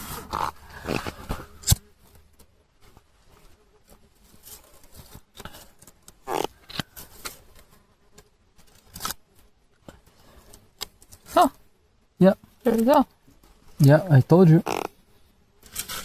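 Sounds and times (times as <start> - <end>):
faint clicks and rustles: 0.0 - 11.7.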